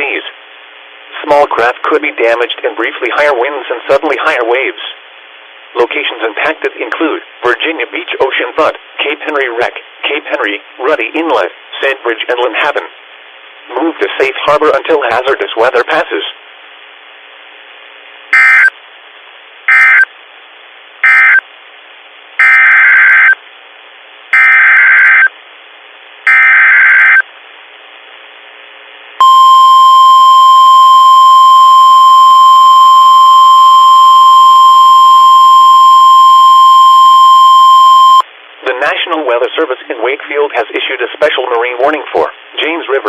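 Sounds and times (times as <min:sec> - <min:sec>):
faint radio static: 0:00.0 - 0:43.0
emergency alert data bursts: 0:18.3 - 0:18.7, 0:19.7 - 0:20.1, 0:21.0 - 0:21.4, 0:22.4 - 0:23.4, 0:24.3 - 0:25.3, 0:26.3 - 0:27.2, 0:29.2 - 0:38.2
steady warning alarm tone: 0:18.4 - 0:18.7, 0:19.7 - 0:20.1, 0:21.0 - 0:21.4, 0:22.4 - 0:23.4, 0:24.4 - 0:25.3, 0:26.3 - 0:27.2, 0:29.2 - 0:38.2.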